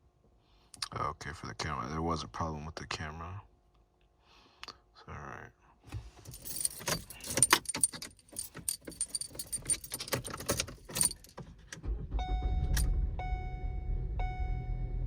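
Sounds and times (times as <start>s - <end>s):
car engine starting and running: 5.9s - 15.0s
keys jangling: 6.2s - 11.8s.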